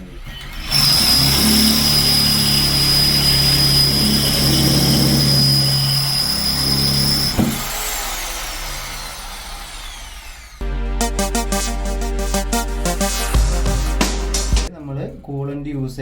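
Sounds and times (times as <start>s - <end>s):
electric drill whining: 0.0s - 10.6s.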